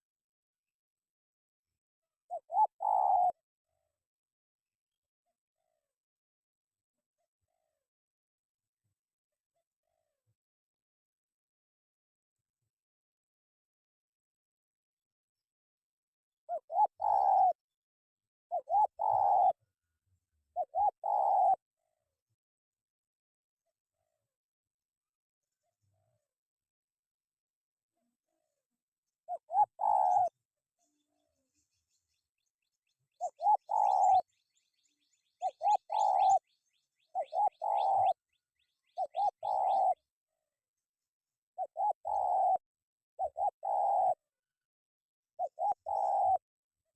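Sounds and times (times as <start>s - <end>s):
dove cooing: 2.3s - 3.4s, 16.5s - 17.6s, 18.5s - 19.6s, 20.6s - 21.6s, 29.3s - 30.4s, 33.2s - 40.0s, 41.6s - 42.6s, 43.2s - 44.2s, 45.4s - 46.4s.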